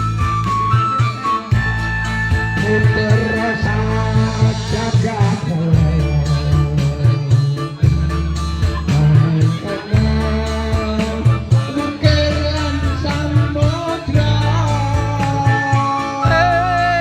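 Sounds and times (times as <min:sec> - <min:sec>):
band music with bass and beat: 0:00.0 - 0:17.0
wavering lead melody: 0:00.0 - 0:17.0.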